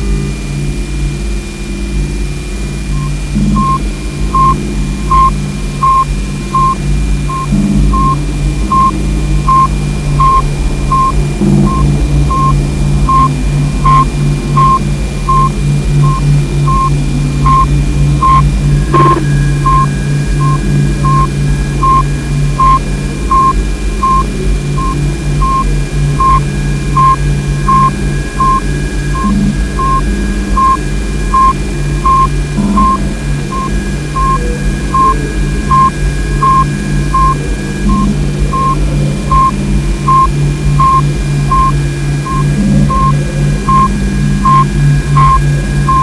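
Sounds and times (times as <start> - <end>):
low pulsing drone and hiss: 0.0 - 46.0
short repeating radio beep: 17.5 - 22.0, 40.1 - 46.0
radio-like hiss: 18.5 - 21.8.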